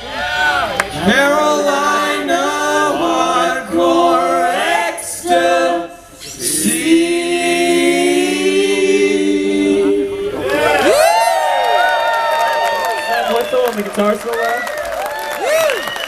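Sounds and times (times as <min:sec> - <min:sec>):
group singing in harmony: 0:00.9 - 0:10.9.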